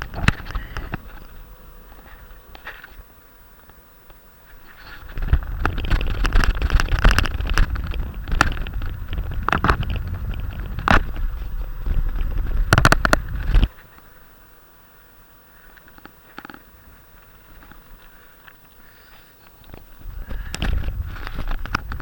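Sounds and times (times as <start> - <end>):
wind buffeting microphone: 0.0 - 3.0, 4.9 - 13.7, 19.6 - 22.0.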